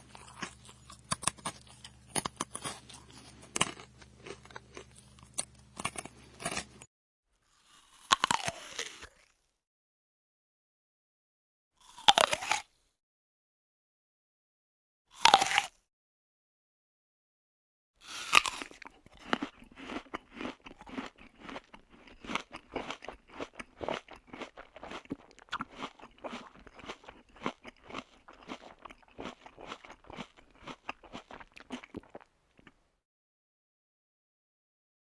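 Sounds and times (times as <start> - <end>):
person chewing crunchy food: 0.0 - 6.9, 7.7 - 9.1, 11.9 - 12.7, 15.2 - 15.7, 18.0 - 32.9.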